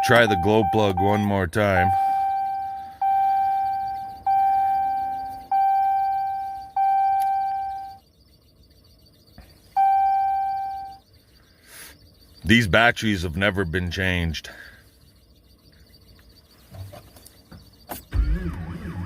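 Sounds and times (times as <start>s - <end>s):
dashboard warning chime: 0.0s - 8.0s, 9.1s - 11.1s.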